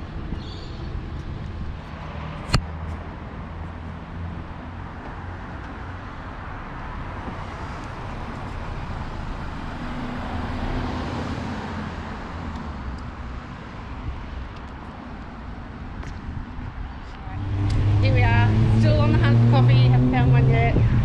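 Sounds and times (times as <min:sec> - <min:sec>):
vehicle passing: 0:07.4 - 0:12.9, 0:17.0 - 0:21.0.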